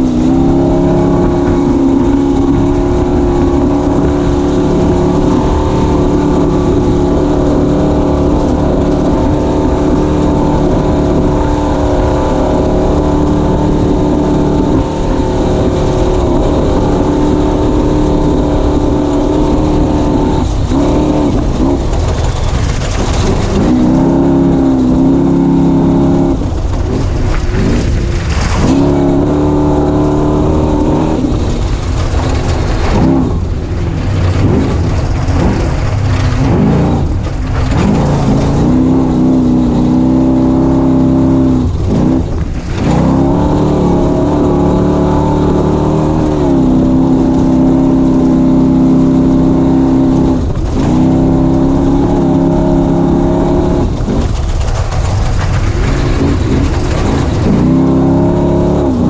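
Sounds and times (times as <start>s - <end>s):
constant low rumble: 0.0s - 59.0s
race engine running hard: 0.0s - 59.0s.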